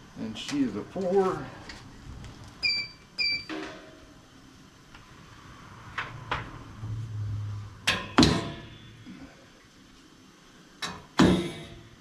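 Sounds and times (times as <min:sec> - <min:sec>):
low hum: 0:04.9 - 0:09.7.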